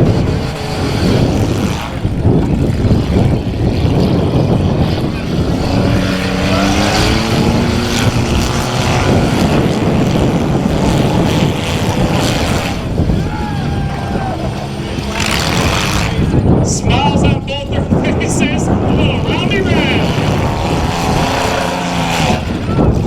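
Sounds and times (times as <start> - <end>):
car engine revving: 0.0 - 23.0
car engines running loud: 0.0 - 23.0.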